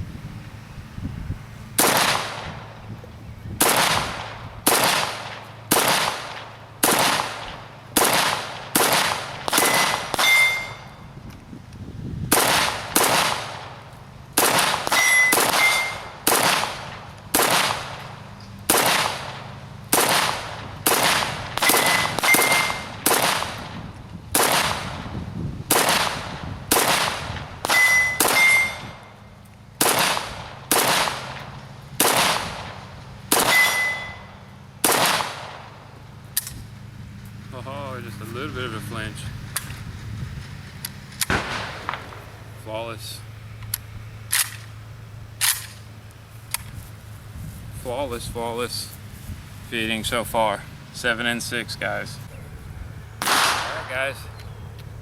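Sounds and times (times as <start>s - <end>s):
rifle single shots: 1.8s - 2.7s, 3.6s - 10.9s, 12.3s - 13.8s, 14.4s - 18.1s, 18.7s - 25.1s, 25.7s - 29.1s, 29.8s - 35.8s, 41.2s - 42.6s, 53.2s - 54.1s
metallic pings: 9.6s - 11.1s, 14.9s - 16.1s, 21.7s - 22.9s, 27.7s - 29.2s, 33.5s - 34.4s.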